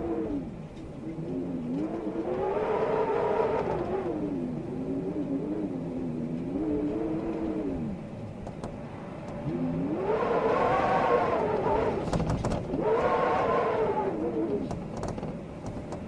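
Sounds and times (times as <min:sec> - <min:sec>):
storm wind howling: 0:00.0 - 0:16.0
sharp rattles: 0:12.0 - 0:12.8.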